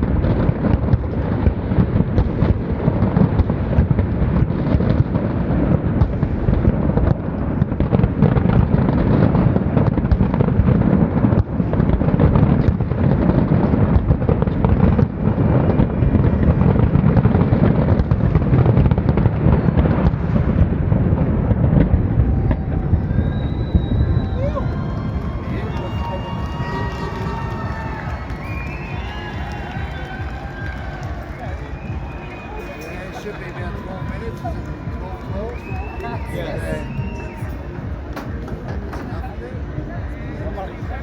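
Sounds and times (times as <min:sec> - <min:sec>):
fireworks bangs and crackles: 0:00.0 - 0:41.0.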